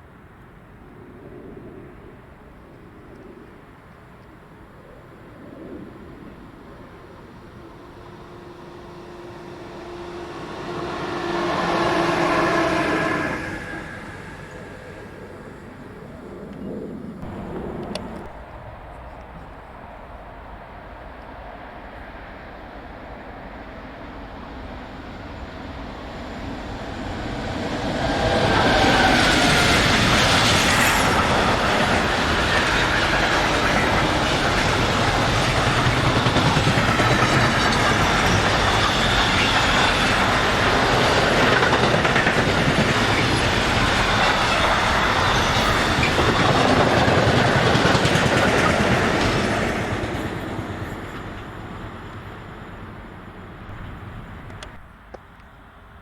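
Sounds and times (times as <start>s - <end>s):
train passing on track: 0.0s - 56.0s.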